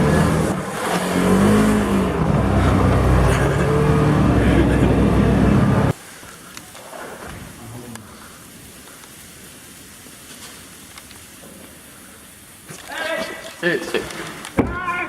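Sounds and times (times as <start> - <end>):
car engine revving: 0.0 - 6.0.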